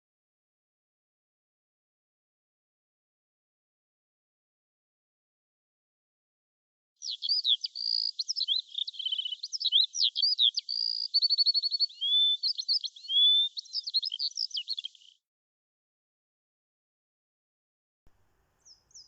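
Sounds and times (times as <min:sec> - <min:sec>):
songbird singing chirps and trills: 0:07.0 - 0:15.2, 0:18.4 - 0:19.0.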